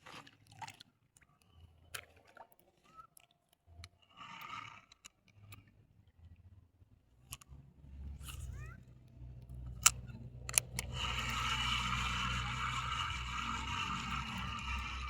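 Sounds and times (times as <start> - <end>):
small boat engine running: 7.5 - 15.0.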